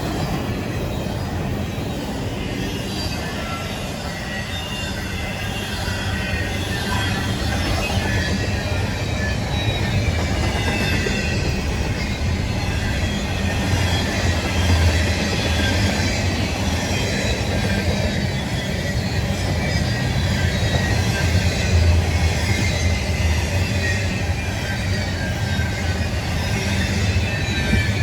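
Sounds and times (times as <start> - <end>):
freight train rumbling past: 0.0 - 28.0
faint wheel squeals: 0.2 - 28.0.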